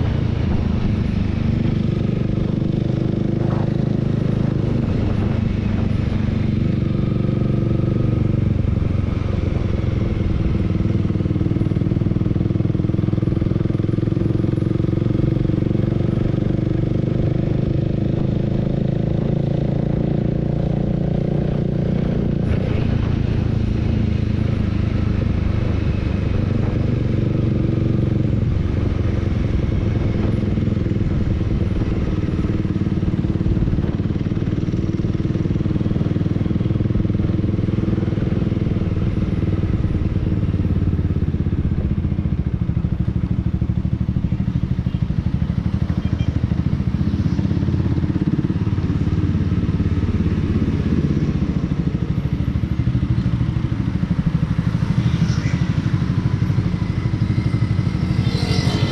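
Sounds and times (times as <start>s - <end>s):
motorcycle engine running: 0.0s - 58.9s.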